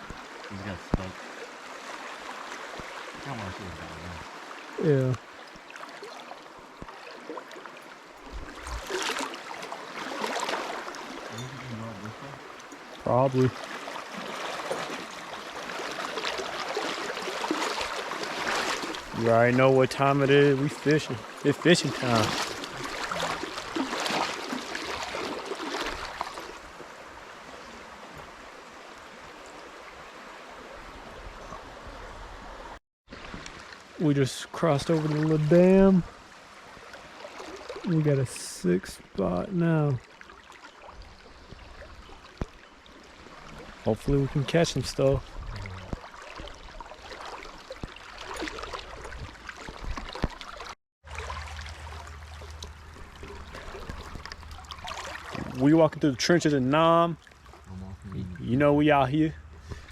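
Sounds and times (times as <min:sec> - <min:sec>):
river water rushing: 0:00.0 - 0:34.0, 0:36.1 - 0:37.9, 0:45.9 - 0:58.2
low hum: 0:57.5 - 0:58.6.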